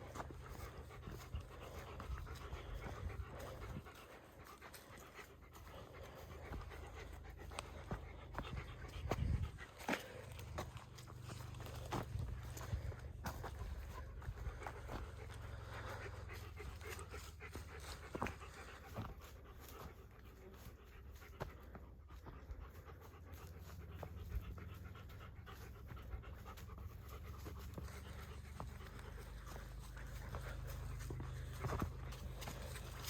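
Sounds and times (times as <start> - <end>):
low rumble of wind on microphone: 0.0 - 4.2, 7.8 - 9.8
footsteps on trail: 0.0 - 33.0
heavy panting breaths: 0.0 - 33.0.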